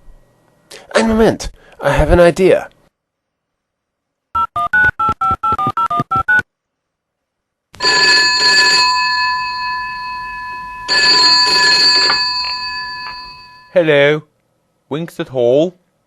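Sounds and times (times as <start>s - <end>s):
telephone bell ringing: 7.8s - 13.8s.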